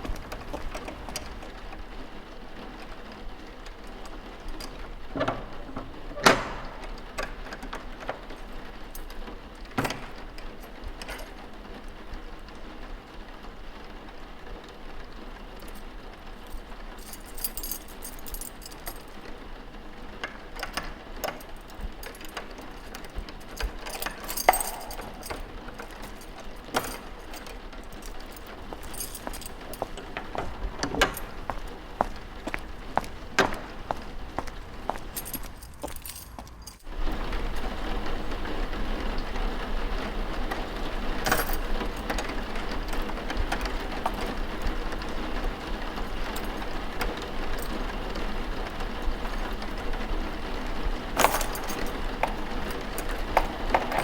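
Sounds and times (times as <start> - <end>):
steady rain: 0.0 - 6.0, 6.8 - 24.4, 36.9 - 51.2
clicks and thuds of objects handled: 20.2 - 36.9, 51.2 - 54.0.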